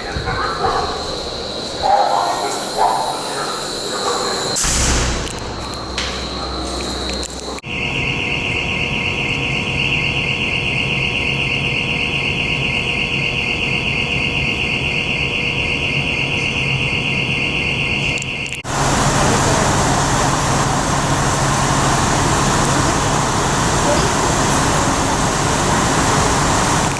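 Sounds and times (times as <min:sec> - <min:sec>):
high-pitched fire alarm tone: 0:00.4 - 0:26.9
street traffic: 0:18.4 - 0:26.9.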